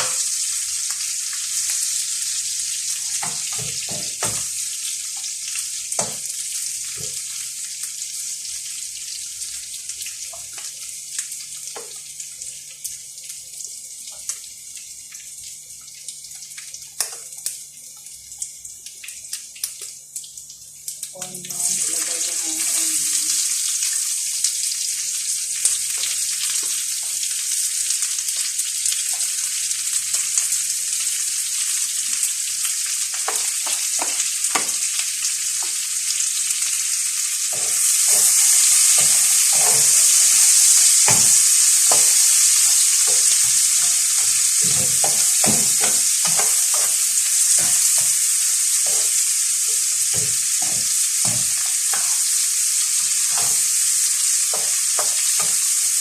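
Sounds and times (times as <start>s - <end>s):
garlic and onion sizzling in oil: 0.0s - 56.0s
utensil scraping a pan: 37.6s - 48.2s.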